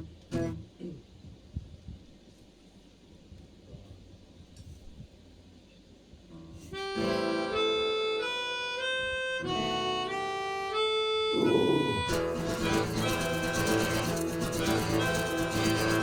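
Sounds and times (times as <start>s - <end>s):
accordion playing chords: 6.7s - 16.0s
band playing: 11.3s - 16.0s.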